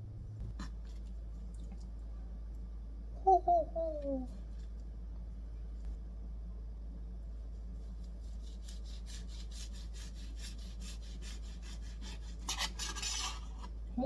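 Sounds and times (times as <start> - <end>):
utensil scraping food: 7.8 - 13.8.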